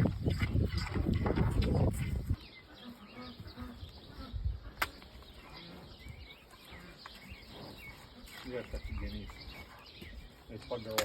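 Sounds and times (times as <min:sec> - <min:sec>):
sharp click: 0:04.8 - 0:05.1.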